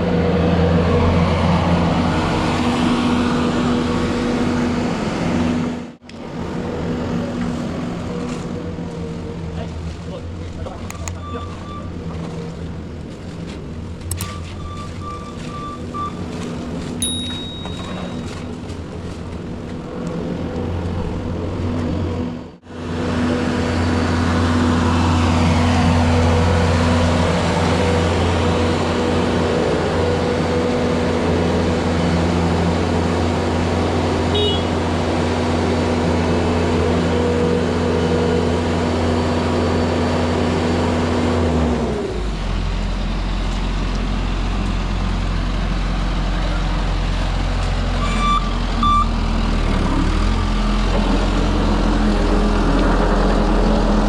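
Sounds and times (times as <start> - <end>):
heavy equipment engine running: 0.0 - 54.0
short beeps: 10.9 - 11.9, 14.2 - 16.2, 17.0 - 18.3, 48.0 - 49.1.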